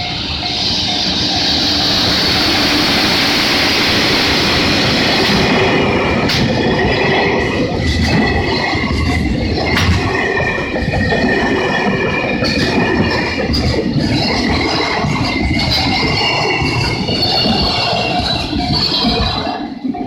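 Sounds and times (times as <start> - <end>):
freight train rumbling on rails: 0.0 - 20.0
wheels clacking over rail joints: 4.5 - 19.6.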